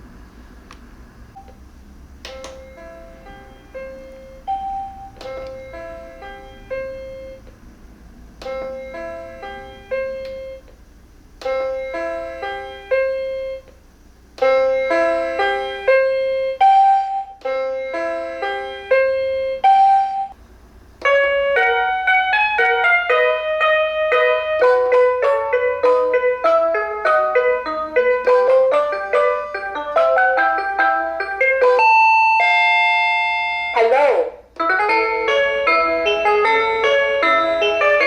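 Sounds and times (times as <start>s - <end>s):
electronic chime melodies: 2.4s - 7.4s, 27.1s - 33.8s.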